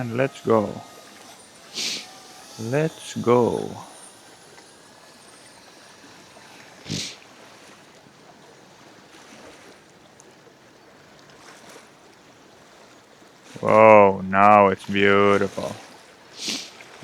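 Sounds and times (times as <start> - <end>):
sharp rustle: 0.0 - 7.8
soft outdoor hiss: 0.0 - 17.0.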